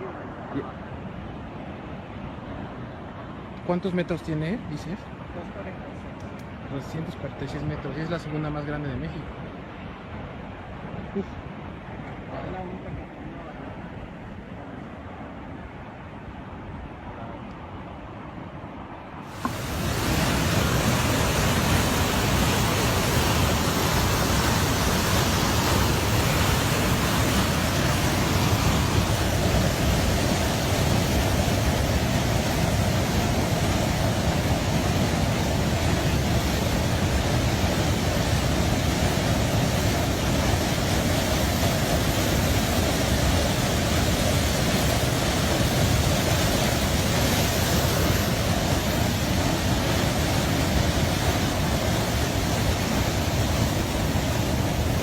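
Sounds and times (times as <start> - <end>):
waterfall roaring: 19.2 - 55.0.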